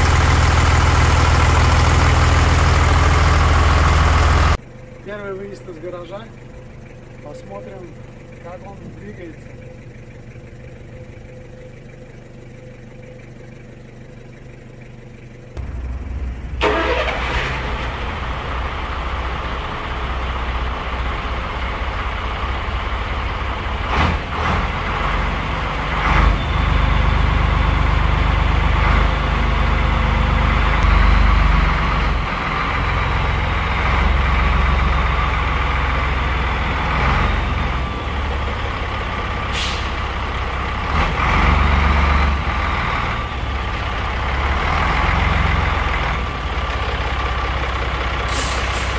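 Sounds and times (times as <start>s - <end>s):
truck diesel engine running: 0.0s - 48.9s.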